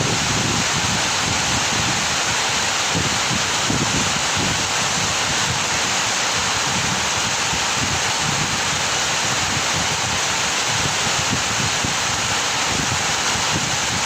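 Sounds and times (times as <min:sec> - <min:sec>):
heavy rain pouring: 0:00.0 - 0:14.0
wind gusting on microphone: 0:00.0 - 0:14.0.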